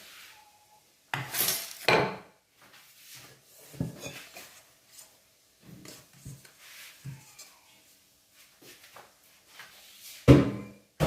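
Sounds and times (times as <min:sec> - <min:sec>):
bowl and utensils clattering: 0:01.1 - 0:02.3, 0:03.8 - 0:04.6.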